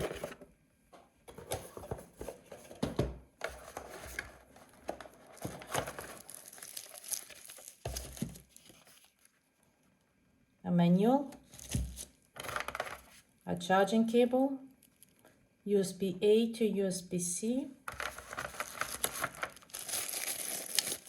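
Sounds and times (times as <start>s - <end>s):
packaging rustling and crinkling: 0.0s - 0.4s, 3.4s - 9.4s, 11.5s - 13.2s, 17.9s - 21.0s.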